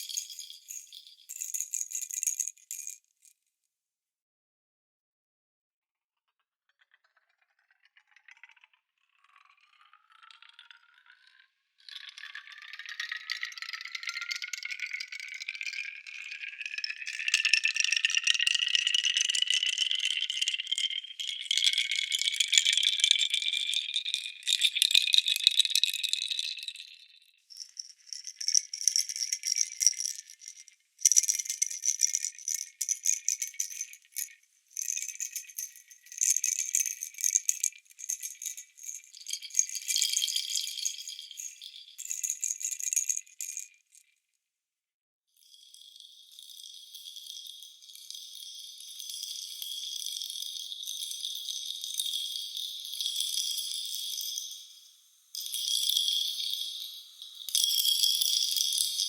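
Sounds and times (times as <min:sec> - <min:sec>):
processed baby rattle shaking: 0:00.0 - 0:03.3, 0:12.1 - 0:44.0, 0:55.4 - 0:59.0.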